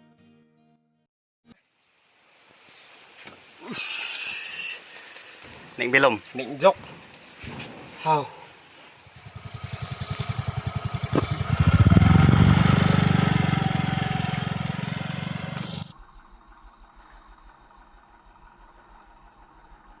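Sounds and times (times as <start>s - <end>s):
vehicle engine running: 9.0s - 20.0s.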